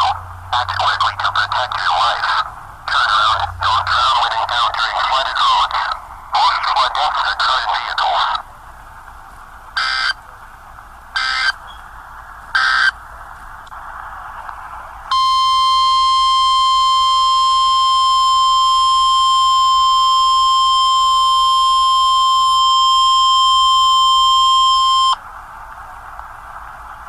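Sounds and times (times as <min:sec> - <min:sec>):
steady piercing warning tone: 0:00.0 - 0:08.5, 0:09.8 - 0:10.2, 0:11.1 - 0:11.8, 0:12.5 - 0:13.0, 0:15.1 - 0:25.2
radio static hiss: 0:00.0 - 0:15.2.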